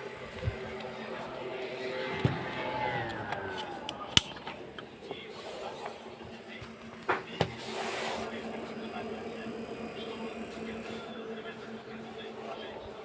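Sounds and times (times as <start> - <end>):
fan motor hum: 0.0 - 13.0
fan whine winding down: 0.0 - 13.0
sharp click: 3.6 - 4.6.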